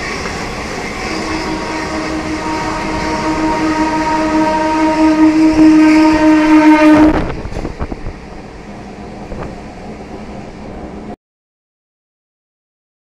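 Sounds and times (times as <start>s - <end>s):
train wheels clattering: 0.0s - 9.9s
train air horn blast: 0.9s - 7.4s.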